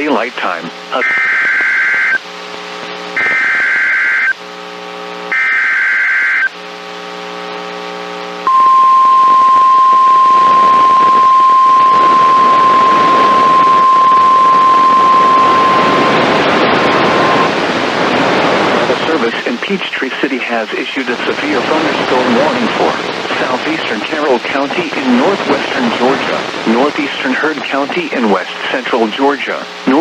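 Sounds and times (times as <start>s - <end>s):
radio hiss: 0.0s - 30.0s
low buzz: 7.0s - 18.8s
steady warning alarm tone: 8.5s - 17.6s
warbling data bursts: 8.5s - 17.6s.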